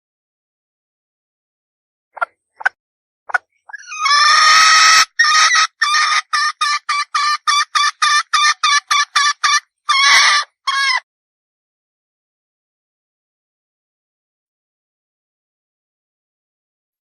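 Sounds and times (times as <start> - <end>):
hen clucking: 3.3 - 11.0
hen squawking: 3.7 - 11.0.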